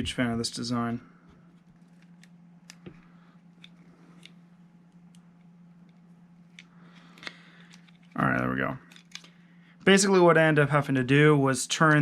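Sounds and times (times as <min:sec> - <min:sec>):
low hum: 0:00.0 - 0:12.0.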